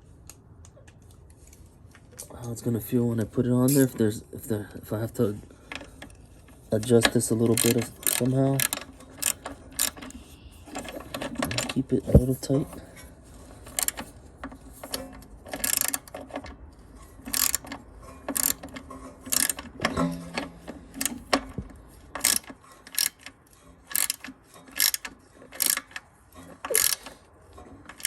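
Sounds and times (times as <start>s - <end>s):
ratchet wrench clicking: 7.4s - 11.8s, 13.7s - 14.1s, 14.7s - 16.4s, 17.2s - 19.8s, 20.4s - 21.6s, 22.2s - 27.2s.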